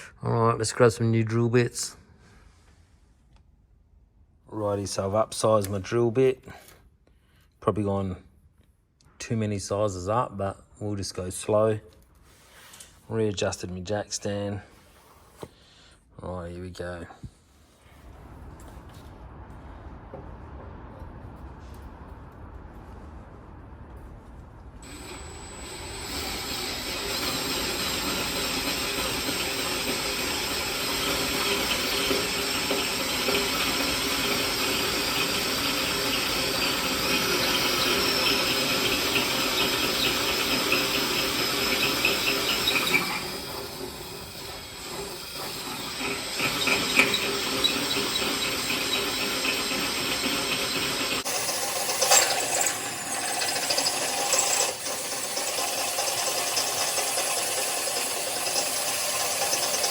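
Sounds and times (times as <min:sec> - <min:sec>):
power drill drilling steel: 0:24.8 - 0:59.9.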